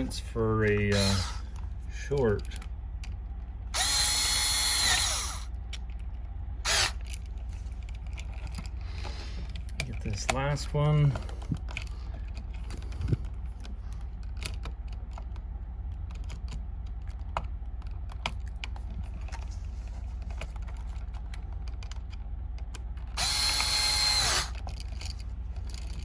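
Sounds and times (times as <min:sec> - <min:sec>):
power screwdriver whine: 0:00.8 - 0:01.4, 0:03.7 - 0:05.5, 0:06.6 - 0:07.2, 0:23.1 - 0:24.6.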